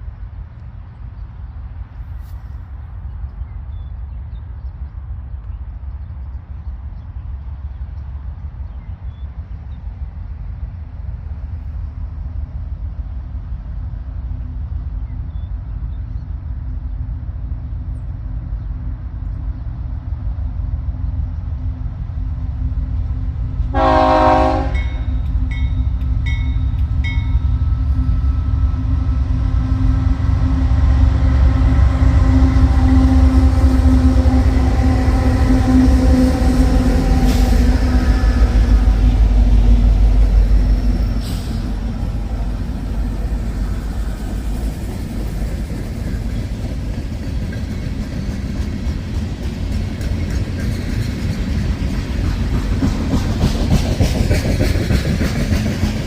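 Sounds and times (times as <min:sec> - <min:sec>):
locomotive rumble: 0:00.0 - 0:56.0
locomotive horn blast: 0:23.7 - 0:25.1.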